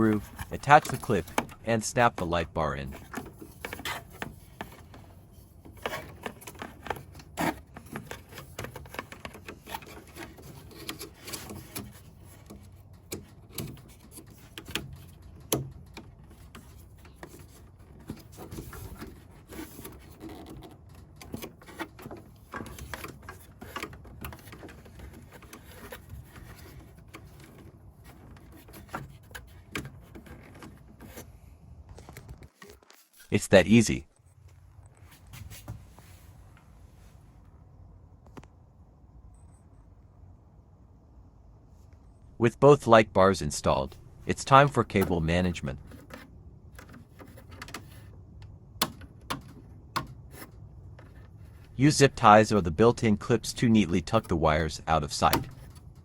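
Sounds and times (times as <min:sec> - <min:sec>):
clicks taps and rubbing: 0:00.0 - 0:31.3.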